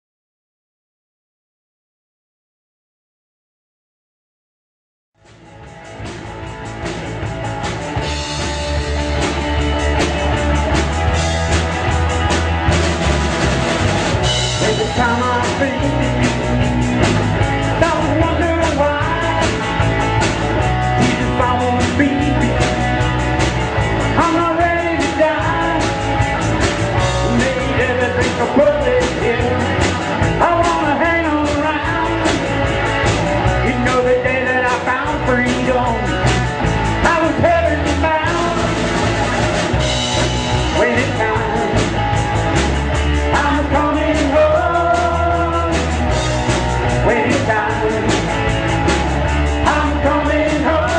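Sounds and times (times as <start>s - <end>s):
rock band playing: 5.2s - 50.9s
person singing lead vocal: 14.4s - 16.8s, 17.4s - 23.4s, 24.0s - 26.3s, 26.9s - 32.7s, 33.4s - 39.2s, 40.6s - 42.1s, 42.9s - 50.9s.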